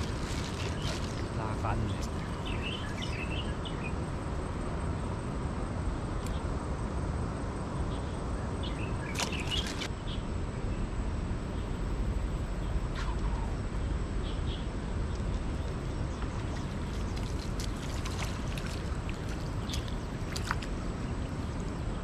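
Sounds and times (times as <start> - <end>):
stream rushing: 0.0 - 4.6, 15.4 - 22.0.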